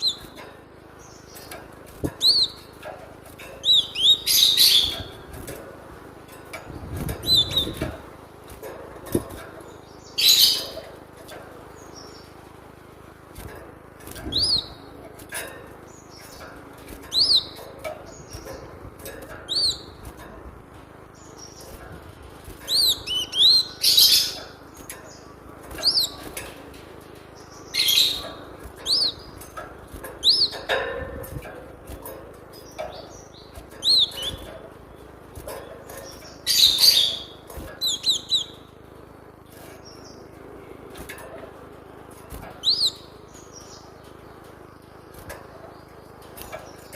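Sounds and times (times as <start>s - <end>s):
harsh bird song bursts: 0.0s - 1.6s, 3.6s - 5.4s, 6.8s - 7.9s, 9.6s - 10.9s, 14.2s - 15.0s, 17.0s - 18.8s, 19.5s - 20.1s, 21.1s - 26.4s, 27.3s - 30.7s, 32.6s - 38.8s, 42.3s - 46.9s.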